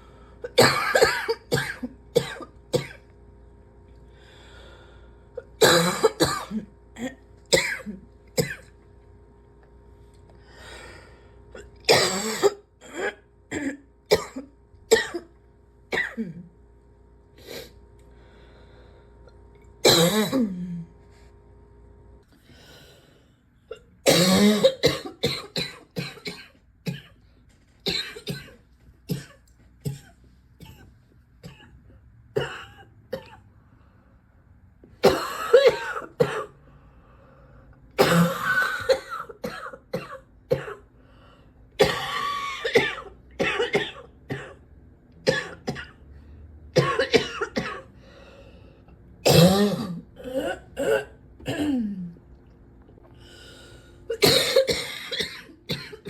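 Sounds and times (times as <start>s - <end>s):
person coughing: 0.4s - 3.0s, 5.5s - 8.7s, 11.6s - 16.5s, 19.8s - 20.9s, 23.7s - 27.2s, 27.8s - 31.8s, 32.4s - 33.5s, 35.0s - 36.6s, 38.0s - 40.9s, 41.8s - 44.6s, 45.3s - 46.0s, 46.8s - 47.9s, 49.2s - 52.2s, 54.1s - 56.0s.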